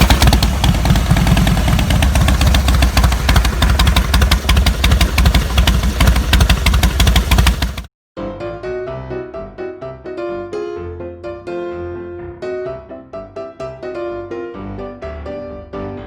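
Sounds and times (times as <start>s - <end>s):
motorcycle engine idling: 0.0s - 7.9s.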